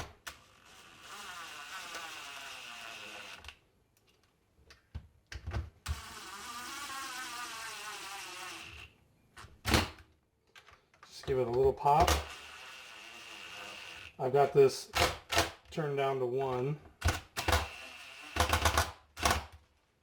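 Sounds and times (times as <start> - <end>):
cordless driver whining: 0.3 - 3.6, 5.9 - 9.0, 12.0 - 14.2.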